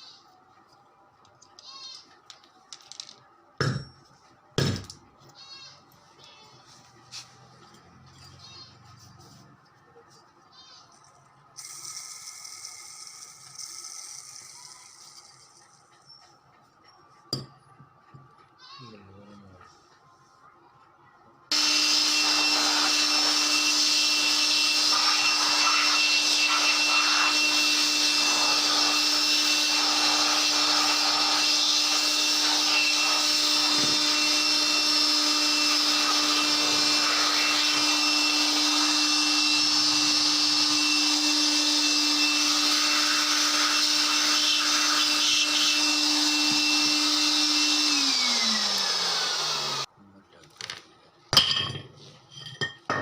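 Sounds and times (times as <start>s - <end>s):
washing machine motor running: 21.5s - 49.9s.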